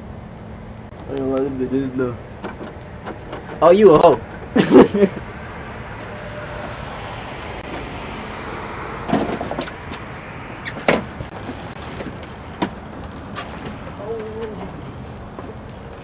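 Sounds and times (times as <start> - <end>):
sharp knocks and clicks: 2.4 - 3.6.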